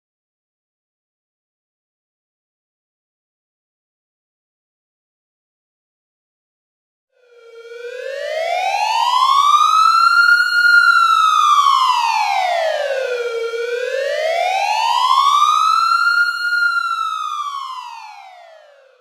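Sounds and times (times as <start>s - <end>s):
wailing siren alarm: 7.2s - 19.0s.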